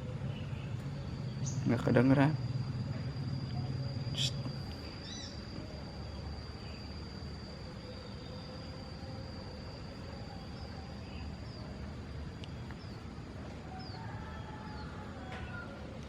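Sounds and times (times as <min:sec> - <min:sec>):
steady high-pitched tone: 0:00.0 - 0:13.4
small bird chirping: 0:00.2 - 0:07.2.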